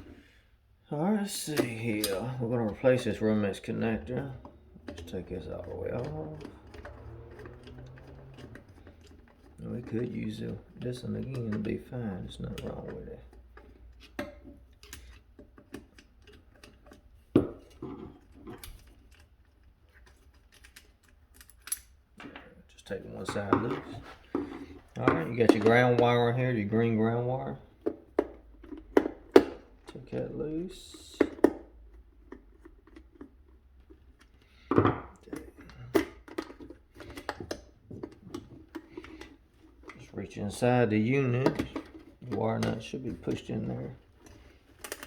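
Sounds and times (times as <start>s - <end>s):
screwdriver and metal parts clicking: 18.6s - 22.0s, 44.2s - 45.0s.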